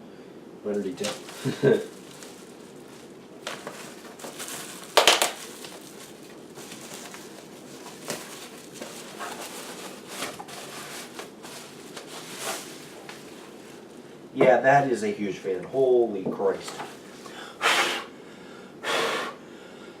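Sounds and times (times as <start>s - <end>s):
packaging crinkling and rustling: 0.7s - 14.0s.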